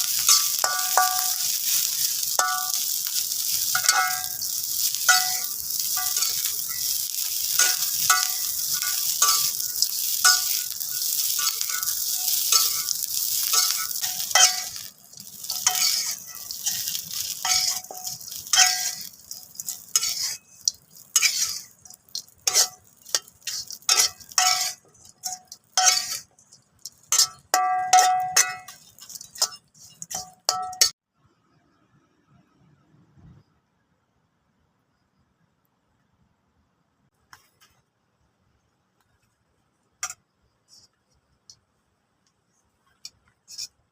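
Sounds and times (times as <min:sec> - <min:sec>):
fried rice sizzling in a pan: 0:00.0 - 0:31.0, 0:39.0 - 0:43.9
metal spatula clinking on pan: 0:00.0 - 0:31.0.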